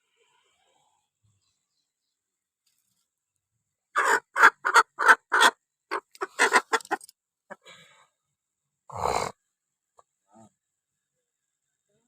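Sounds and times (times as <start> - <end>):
hen clucking: 4.0 - 7.6.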